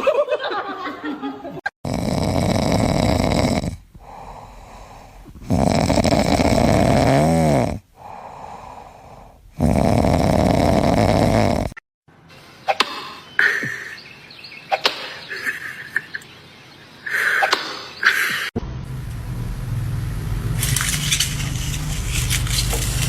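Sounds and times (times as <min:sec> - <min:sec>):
loud snoring: 0:01.8 - 0:11.8
quiet breathing: 0:03.6 - 0:06.7, 0:07.8 - 0:09.6.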